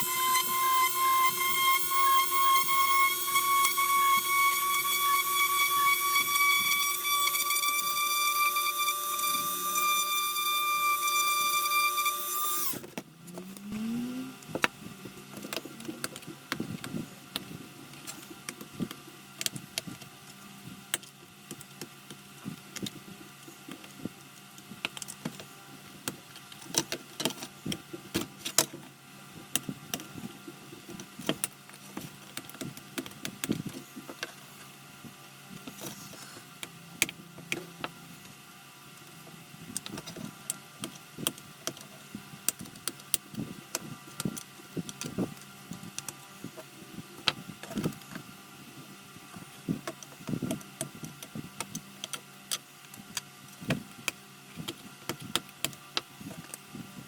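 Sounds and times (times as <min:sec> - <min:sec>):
rotary tool drilling plastic: 0:00.0 - 0:12.9.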